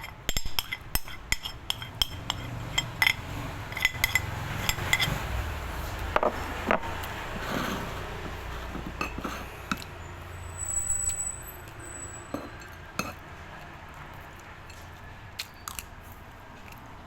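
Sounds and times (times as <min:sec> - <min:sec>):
utensils clinking against dishes: 0:00.0 - 0:05.4, 0:08.6 - 0:10.0, 0:10.9 - 0:13.2.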